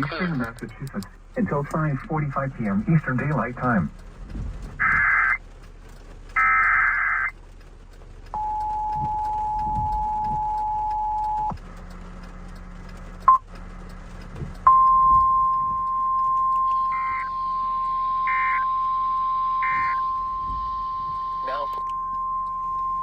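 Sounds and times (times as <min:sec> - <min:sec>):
warbling data bursts: 0:00.0 - 0:07.4, 0:14.6 - 0:23.0
two-tone attention signal: 0:04.8 - 0:05.4, 0:08.4 - 0:11.6, 0:14.7 - 0:23.0
brief blips: 0:06.4 - 0:07.3, 0:14.7 - 0:23.0
steady single-pitch alert tone: 0:14.7 - 0:23.0.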